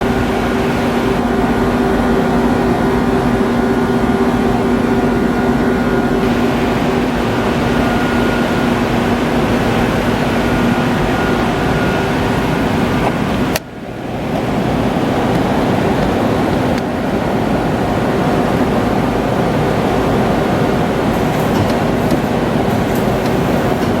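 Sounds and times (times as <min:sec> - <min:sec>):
machine hum with held tones: 0:00.0 - 0:24.0.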